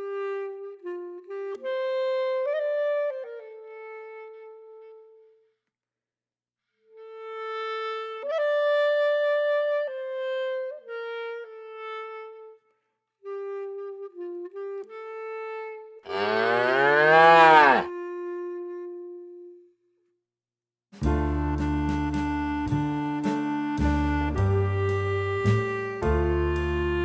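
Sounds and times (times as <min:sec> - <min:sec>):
clarinet-like woodwind melody: 0:00.0 - 0:05.6, 0:06.9 - 0:20.0, 0:21.0 - 0:27.0
cow mooing: 0:16.1 - 0:17.9.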